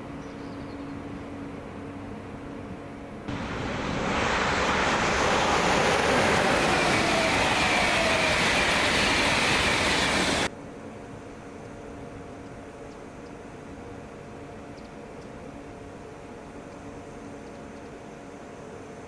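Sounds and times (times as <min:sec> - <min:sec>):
train passing at high speed: 0:03.3 - 0:10.5.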